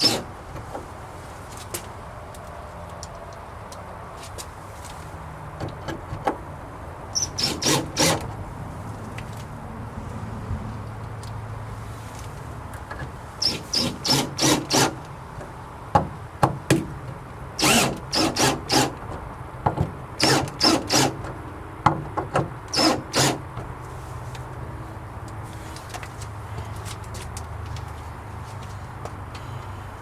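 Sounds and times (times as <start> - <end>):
hand tool rasping against wood: 7.2 - 8.2, 13.4 - 15.0, 22.8 - 23.4.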